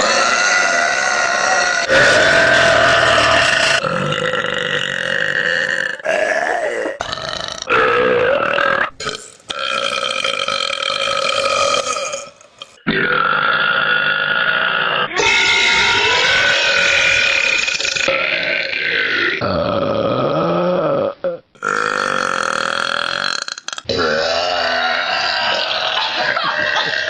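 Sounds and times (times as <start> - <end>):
woman burping: 23.2 - 27.0.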